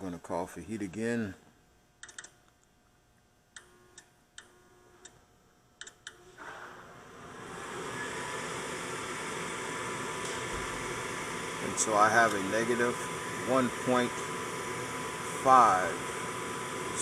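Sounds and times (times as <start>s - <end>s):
motor whirring hum: 6.0s - 17.0s.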